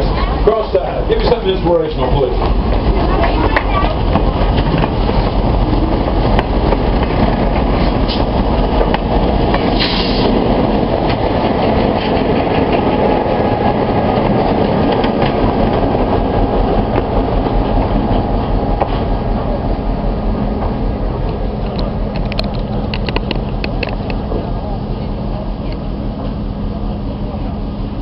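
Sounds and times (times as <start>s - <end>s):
train wheels rumbling on rails: 0.0s - 28.0s
short hiss: 9.7s - 10.4s.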